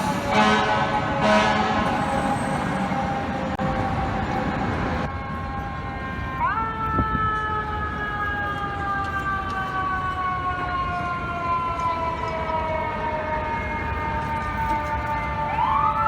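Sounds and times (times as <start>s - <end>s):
fire engine siren: 0.0s - 16.0s
traffic noise: 0.0s - 16.0s
steady horn tone: 0.3s - 2.7s.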